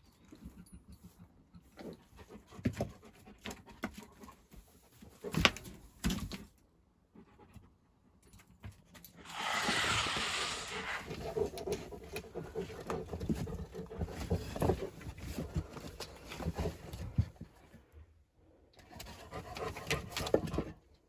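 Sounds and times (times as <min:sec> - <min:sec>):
rush of noise: 0:09.3 - 0:11.1.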